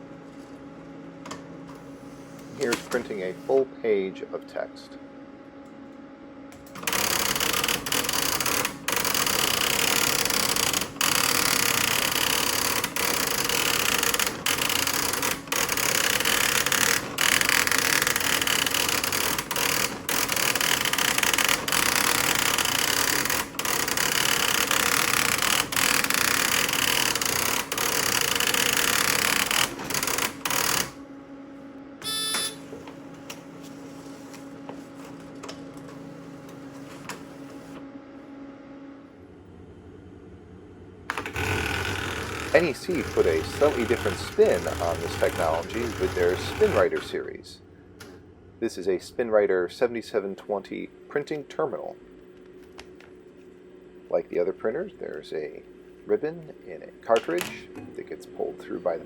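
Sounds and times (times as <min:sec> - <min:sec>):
daisy wheel printer rattling: 0:41.1 - 0:47.2.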